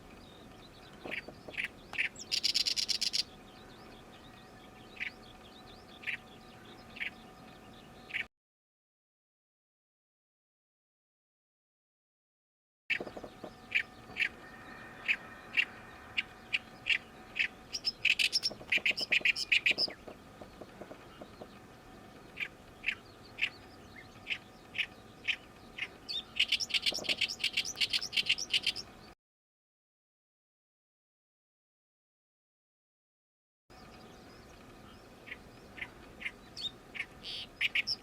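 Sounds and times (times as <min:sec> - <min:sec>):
reed warbler singing: 0:00.0 - 0:08.3, 0:12.9 - 0:29.1, 0:33.8 - 0:38.0.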